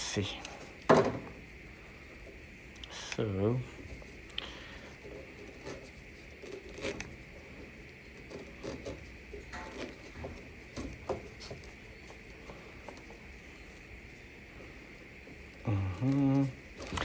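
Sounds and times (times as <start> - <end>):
hands scratching and clicking: 4.0 - 17.0.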